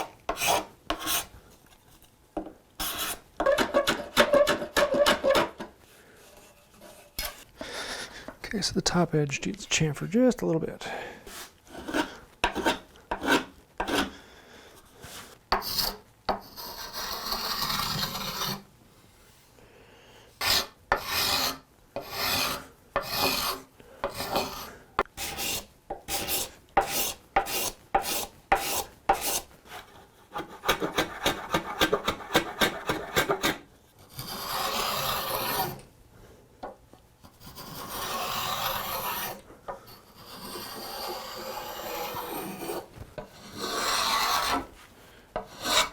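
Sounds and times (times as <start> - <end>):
hand tool scraping wood: 0.0 - 1.3, 2.8 - 5.7, 11.3 - 14.1, 15.0 - 18.6, 20.4 - 35.8, 37.2 - 45.9.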